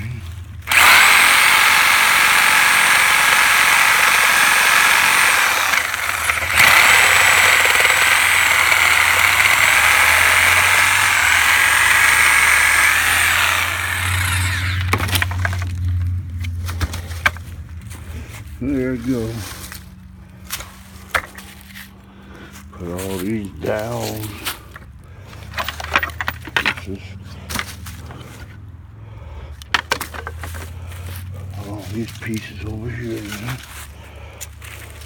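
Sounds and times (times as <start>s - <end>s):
power tool cutting wood: 0.6s - 15.7s.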